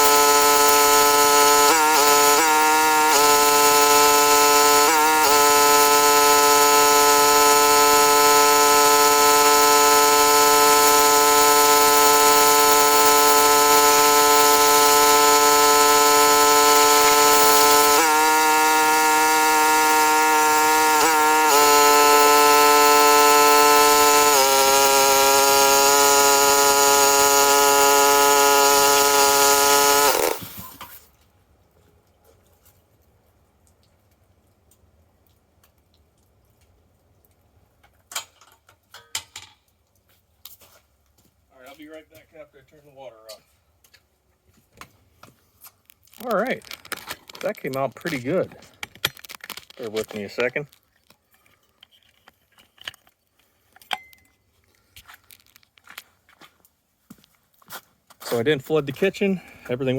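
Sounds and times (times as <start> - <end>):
pressure washer engine whine: 0.0 - 30.8.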